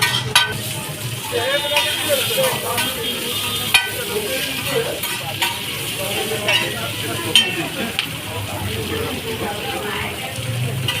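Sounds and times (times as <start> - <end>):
metal spatula clanking on pan: 0.0 - 0.7, 1.6 - 8.2, 10.8 - 11.0
noodles sizzling in a wok: 0.0 - 11.0.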